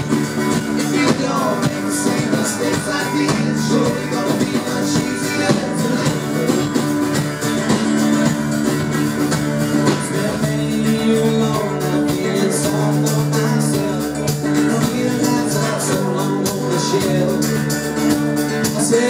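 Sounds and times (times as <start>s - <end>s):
guitar: 0.0s - 19.0s
live band playing pop-rock: 0.0s - 19.0s.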